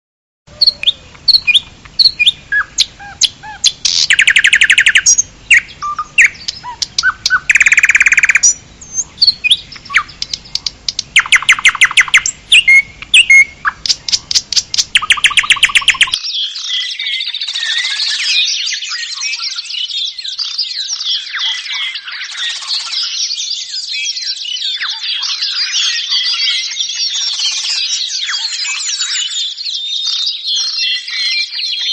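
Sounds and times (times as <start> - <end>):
buzzy bird trills: 0.5 - 16.2
bird chirps: 0.5 - 31.9
chorus of birds chattering: 0.5 - 31.9.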